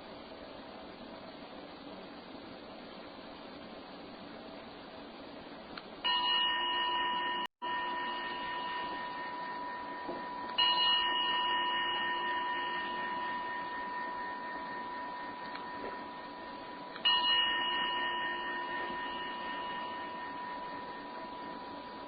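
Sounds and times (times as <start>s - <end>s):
meditation bell ringing: 6.0s - 22.0s.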